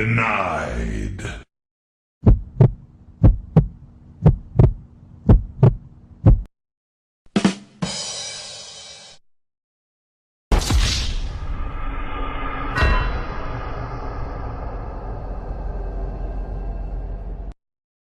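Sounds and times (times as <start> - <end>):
heartbeat double thumps: 2.2 - 6.5.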